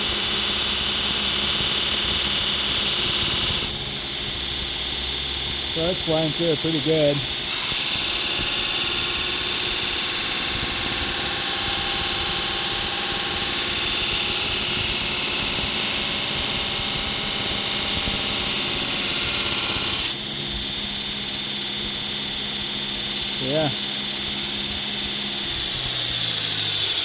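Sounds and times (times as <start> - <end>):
grinder motor hum: 0.0 - 20.2, 23.4 - 24.0
belt grinder grinding steel: 0.0 - 20.3, 23.3 - 27.0.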